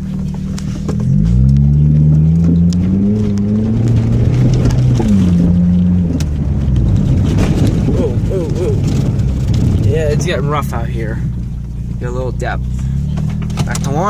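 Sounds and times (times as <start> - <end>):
car engine accelerating: 0.0 - 14.0.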